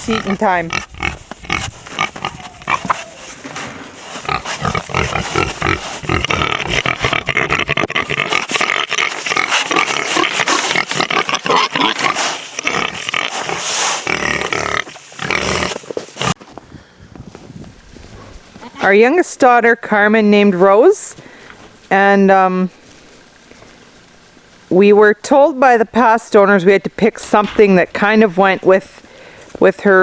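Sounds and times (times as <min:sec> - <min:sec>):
pigs grunting: 0:00.0 - 0:03.4, 0:04.0 - 0:16.4.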